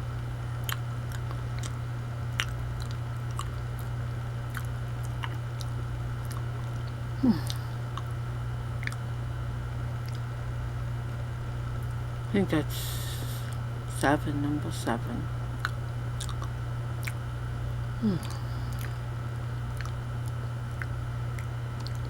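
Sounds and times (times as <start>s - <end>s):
wet mouth clicks: 0.6s - 3.9s, 4.5s - 8.1s, 8.8s - 9.0s, 15.6s - 17.2s, 18.0s - 19.0s, 19.7s - 22.0s
person chewing banana: 0.6s - 9.1s, 9.9s - 10.4s, 15.6s - 17.2s, 17.9s - 22.0s
short hum of enjoyment: 7.2s - 7.8s, 18.0s - 19.0s.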